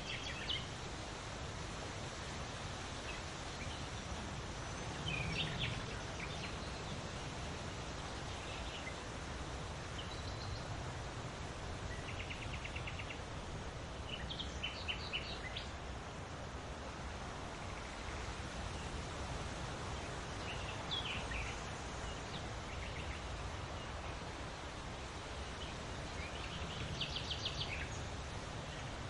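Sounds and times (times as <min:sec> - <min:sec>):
small birds chirping: 0:00.0 - 0:00.8, 0:03.0 - 0:09.2, 0:09.8 - 0:10.8, 0:11.8 - 0:15.8, 0:19.9 - 0:29.0
wind with low rumble: 0:00.0 - 0:29.0.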